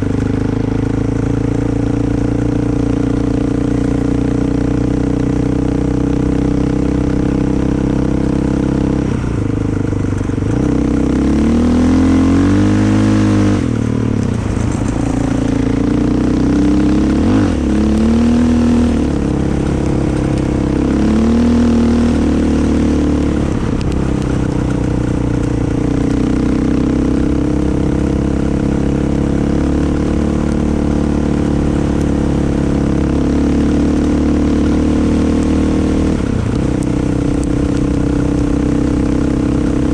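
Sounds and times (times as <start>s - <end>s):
off-road vehicle engine revving: 10.5s - 39.9s.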